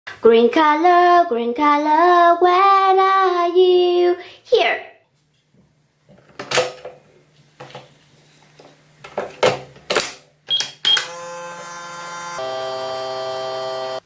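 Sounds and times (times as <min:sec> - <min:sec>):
microwave oven humming: 0:10.5 - 0:14.0.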